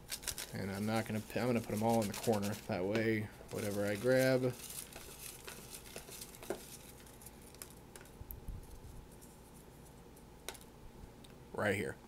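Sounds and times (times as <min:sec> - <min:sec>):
paper slips rustling: 0:00.0 - 0:07.8.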